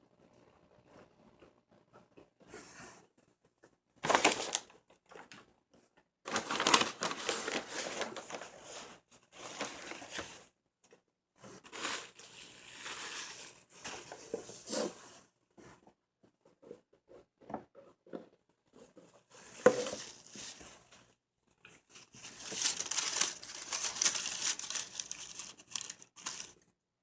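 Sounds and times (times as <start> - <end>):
paper wrapper crinkling: 4.0 - 5.3, 6.3 - 8.8, 21.9 - 26.6.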